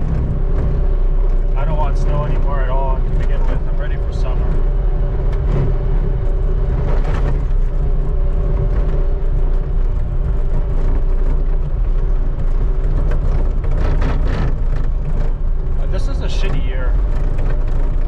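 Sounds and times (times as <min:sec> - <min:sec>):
engine drone under load: 0:00.0 - 0:18.0.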